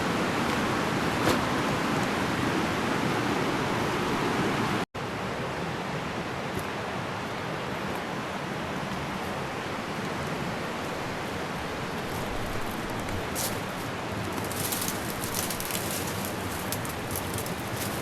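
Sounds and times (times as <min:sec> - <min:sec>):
fast river rushing: 0:00.0 - 0:18.0
rustles and crackles: 0:11.9 - 0:18.0.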